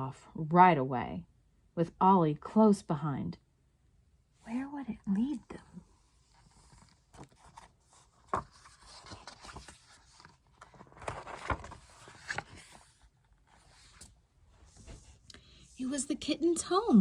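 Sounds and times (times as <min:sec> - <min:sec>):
book pages rustling: 0:06.1 - 0:15.3.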